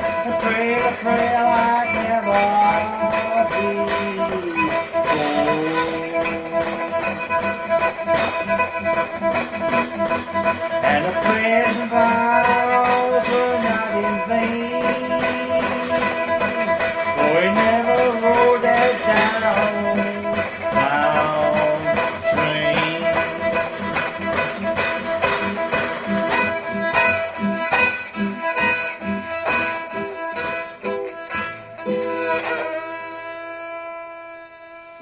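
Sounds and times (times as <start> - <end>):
fiddle playing sliding notes: 0.0 - 35.0
plucked string accompaniment: 0.0 - 35.0.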